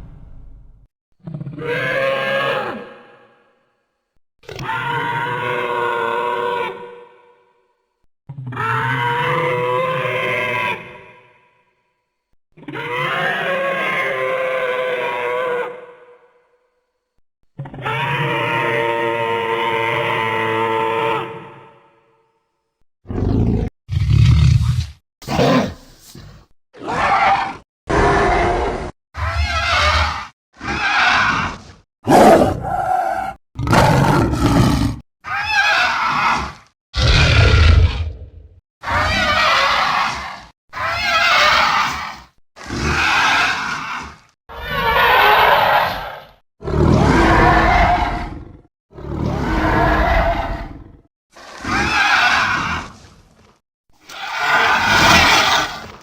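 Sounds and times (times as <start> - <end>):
monster roars: 26.8 - 53.0, 54.0 - 55.9.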